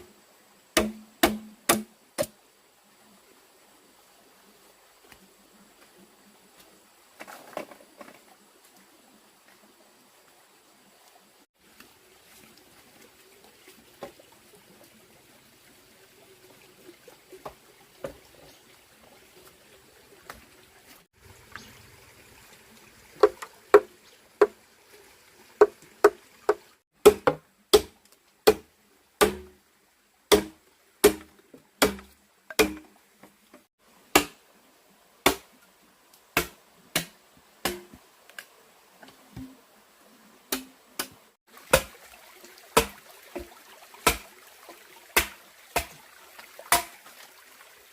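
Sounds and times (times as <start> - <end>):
tool striking wood: 0.8 - 2.3, 28.5 - 29.5, 30.3 - 32.9.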